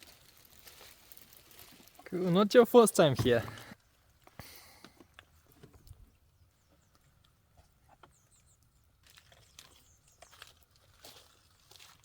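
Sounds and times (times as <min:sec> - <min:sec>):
soft high bird chirps: 0:06.1 - 0:10.6.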